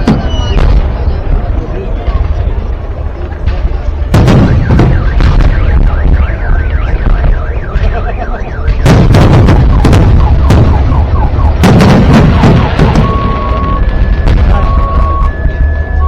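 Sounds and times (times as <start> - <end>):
firework bursts: 0.0 - 16.0
whistling firework: 0.0 - 16.0.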